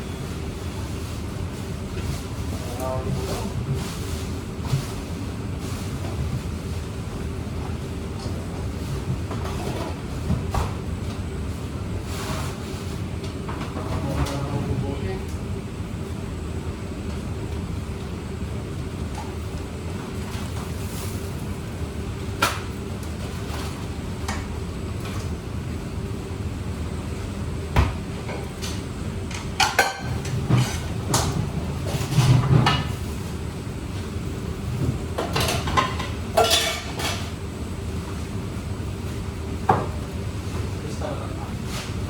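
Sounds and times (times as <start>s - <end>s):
dishes and pans clattering: 29.6s - 32.9s, 35.2s - 37.3s.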